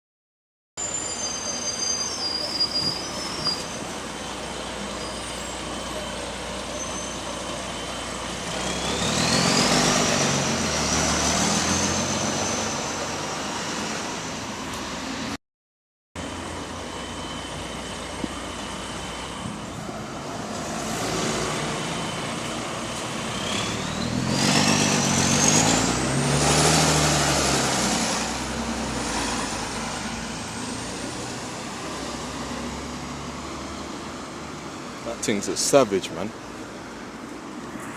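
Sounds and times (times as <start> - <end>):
bus diesel engine pulling away: 0.8 - 15.4, 16.2 - 37.9.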